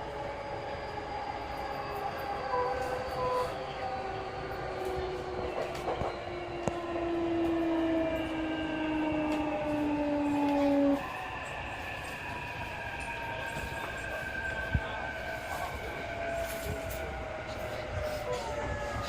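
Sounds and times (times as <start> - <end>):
electric train motor whine: 1.4 - 11.1.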